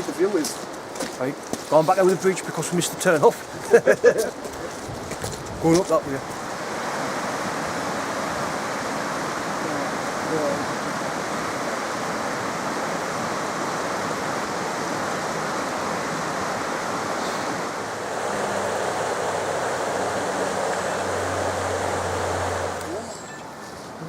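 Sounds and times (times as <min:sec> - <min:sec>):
stream flowing over rocks: 0:06.2 - 0:24.0.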